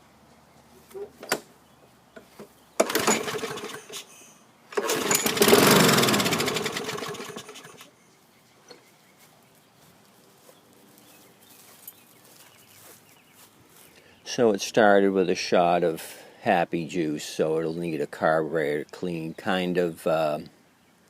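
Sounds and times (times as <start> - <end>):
lawn mower engine running: 2.8 - 4.1, 4.7 - 7.9
starter cord pull: 2.8 - 4.1, 4.7 - 7.8.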